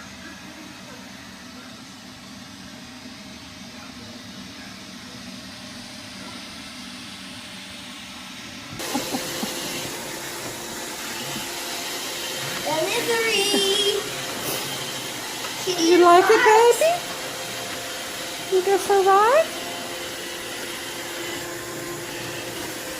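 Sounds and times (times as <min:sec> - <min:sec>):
robot vacuum whirring: 0:08.8 - 0:22.9.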